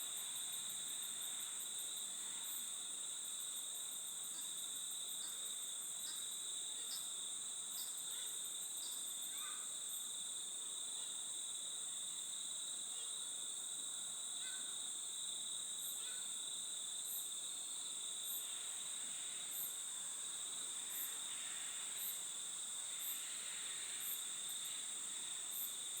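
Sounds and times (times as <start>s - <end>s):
insects trilling drone: 20.9s - 26.0s.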